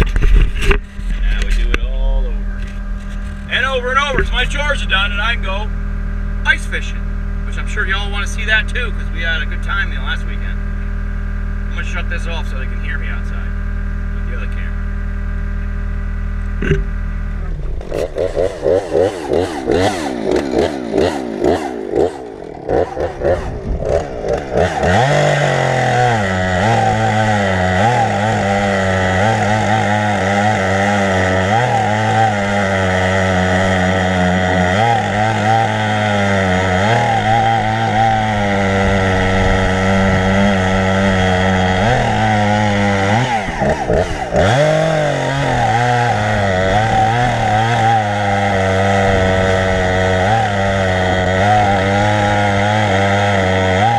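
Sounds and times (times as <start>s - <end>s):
chainsaw cutting through log: 16.0s - 53.9s.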